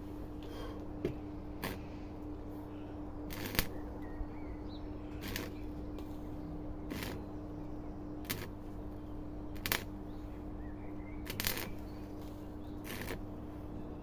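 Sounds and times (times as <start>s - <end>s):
electrical hum: 0.0s - 14.0s
welding bursts: 1.6s - 1.8s, 3.3s - 3.7s, 5.2s - 5.6s, 6.9s - 7.2s, 8.2s - 8.6s, 9.6s - 9.9s, 11.2s - 11.8s, 12.8s - 13.2s.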